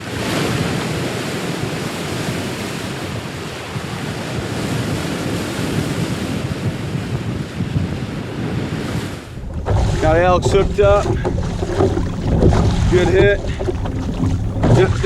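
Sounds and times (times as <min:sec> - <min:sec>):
sea waves: 0:00.0 - 0:15.0
wind buffeting microphone: 0:00.2 - 0:15.0
wind rushing: 0:09.0 - 0:15.0.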